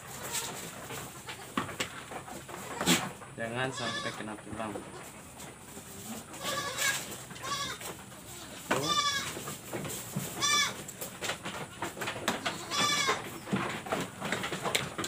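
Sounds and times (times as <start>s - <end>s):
goat bleating: 0.1s - 1.6s, 2.6s - 5.2s, 6.1s - 9.6s, 10.3s - 10.9s, 12.4s - 13.4s.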